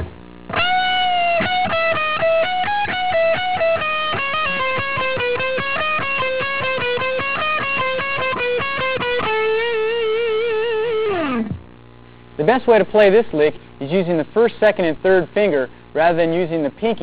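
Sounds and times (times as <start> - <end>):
electric guitar lead lick: 0.0 - 12.2.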